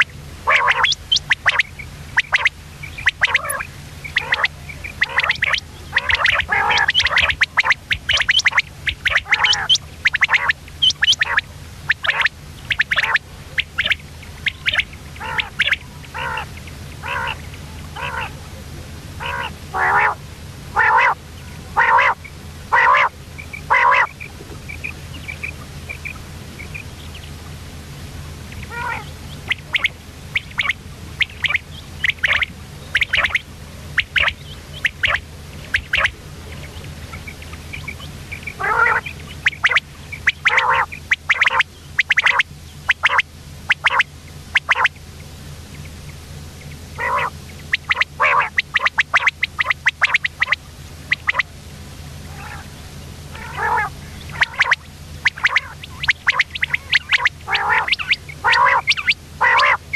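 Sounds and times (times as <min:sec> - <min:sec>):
quail calling harsh notes: 0:00.0 - 0:18.4, 0:19.2 - 0:21.2, 0:21.8 - 0:27.3, 0:28.5 - 0:45.0, 0:46.6 - 0:51.5, 0:52.3 - 0:52.7, 0:53.3 - 0:59.9
faint chirps: 0:00.0 - 0:20.2, 0:20.8 - 0:27.5, 0:28.3 - 0:59.9
steady low hum: 0:00.0 - 0:59.9.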